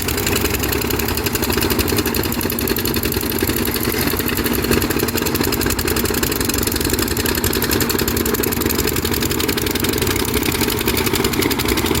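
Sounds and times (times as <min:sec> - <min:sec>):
excavator diesel engine running: 0:00.0 - 0:12.0.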